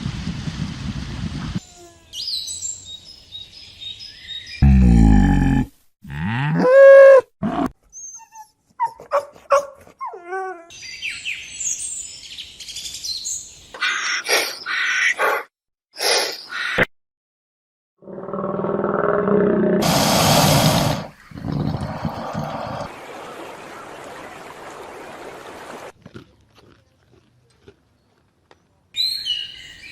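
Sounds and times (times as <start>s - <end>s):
deep animal call: 4.6s - 7.7s.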